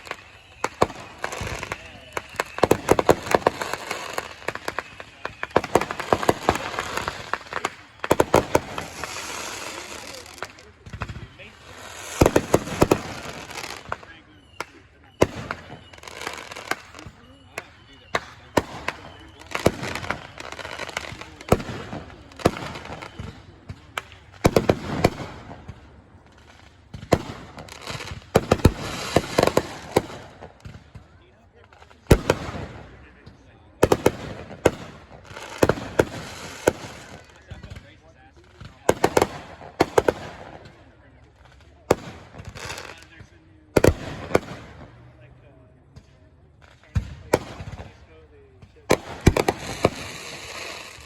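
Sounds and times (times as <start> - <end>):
fireworks cracking and popping: 0.0 - 51.0.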